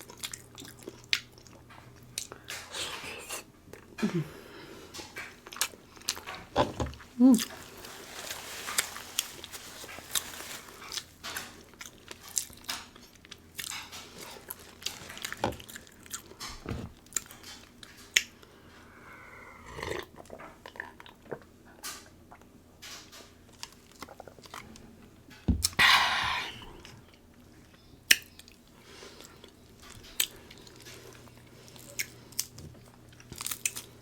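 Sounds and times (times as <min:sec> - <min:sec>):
close chewing and biting: 0:04.9 - 0:18.4, 0:19.8 - 0:25.0, 0:26.8 - 0:34.0.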